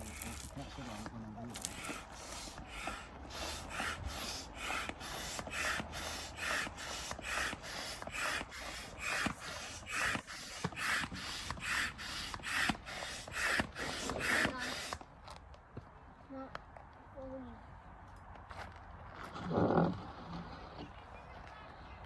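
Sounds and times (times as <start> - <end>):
hand air pump strokes: 0.0 - 15.0.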